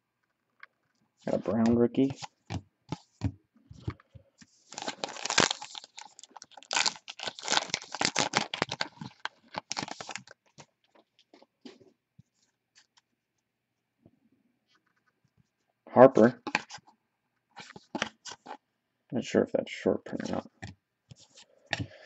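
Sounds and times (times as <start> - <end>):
wrapper tearing and crinkling: 4.7 - 10.4.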